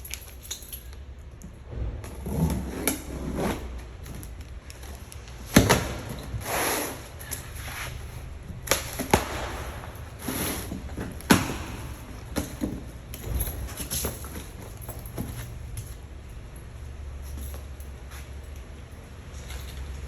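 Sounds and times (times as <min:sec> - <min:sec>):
gear knocking and thudding: 0:01.4 - 0:06.4, 0:07.2 - 0:17.8.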